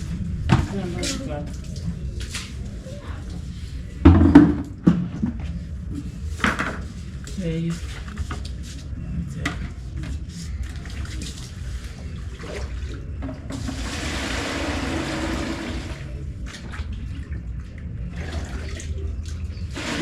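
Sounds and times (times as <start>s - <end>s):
water pouring: 10.6s - 20.0s.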